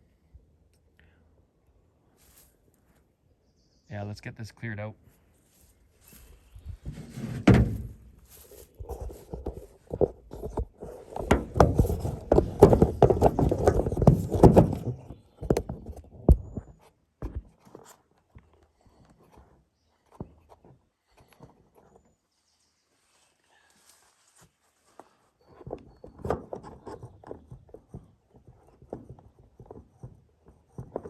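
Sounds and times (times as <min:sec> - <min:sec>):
footsteps in undergrowth: 0:02.2 - 0:03.0, 0:05.0 - 0:07.1, 0:07.7 - 0:13.4, 0:22.9 - 0:25.5.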